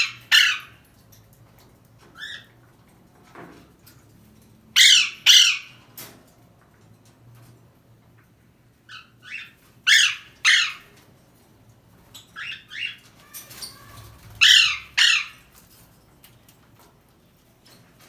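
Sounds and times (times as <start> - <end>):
parrot screeching calls: 0.0 - 0.8, 4.8 - 5.8, 9.0 - 10.9, 12.4 - 15.4.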